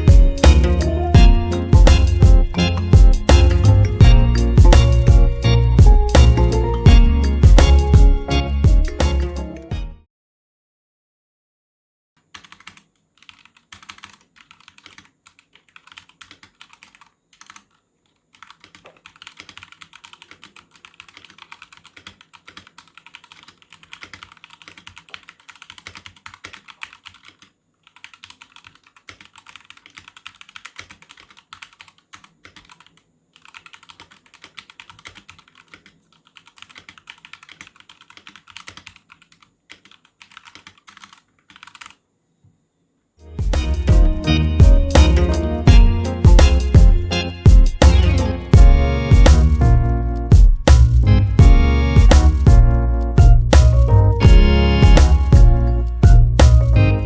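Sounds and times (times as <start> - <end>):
mechanical keyboard typing: 12.2 - 42.0.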